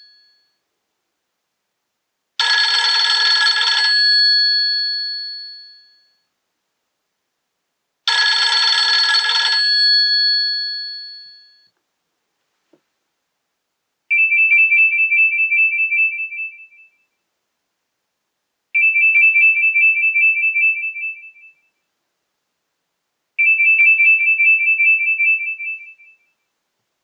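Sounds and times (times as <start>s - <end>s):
two-tone electronic ringtone: 2.4s - 6.2s, 8.1s - 11.7s.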